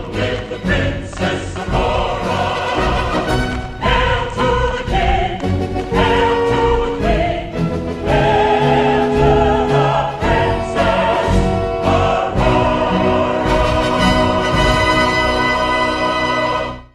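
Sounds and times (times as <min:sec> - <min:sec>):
choir singing: 0:00.0 - 0:16.9
orchestra playing: 0:01.6 - 0:16.9.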